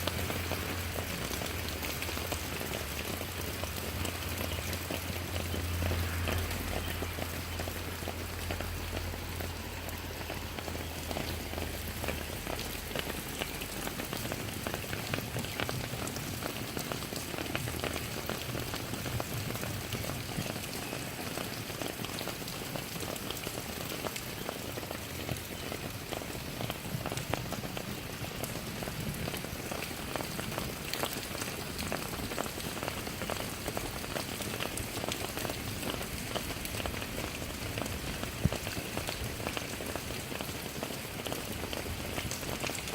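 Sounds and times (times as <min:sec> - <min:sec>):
raindrops ticking close by: 0:00.0 - 0:42.9
steady rain falling: 0:00.0 - 0:42.9.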